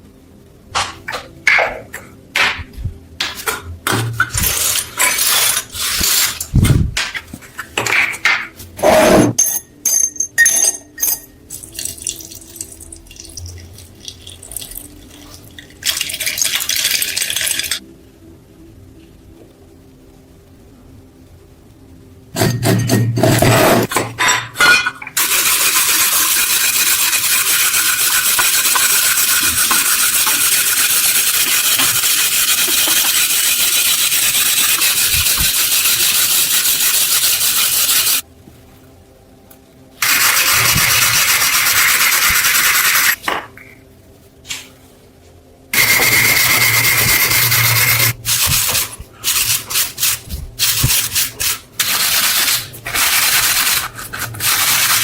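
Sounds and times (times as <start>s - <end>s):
scrubbing rusty metal: 25.2s - 38.2s.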